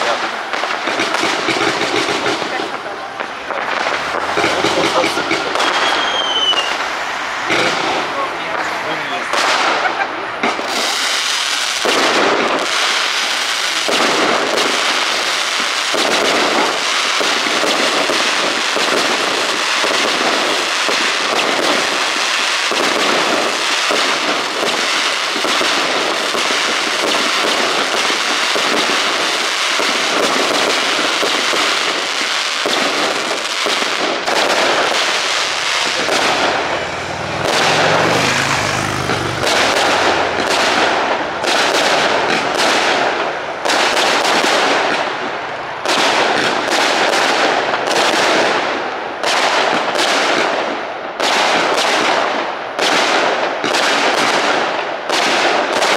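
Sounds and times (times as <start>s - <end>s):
fireworks crackling and banging: 0.0s - 55.9s
deep rumble: 35.4s - 41.4s.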